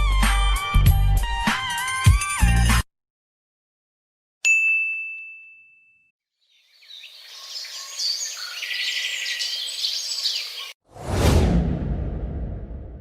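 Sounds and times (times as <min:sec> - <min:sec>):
birds chirping: 0:06.4 - 0:10.8.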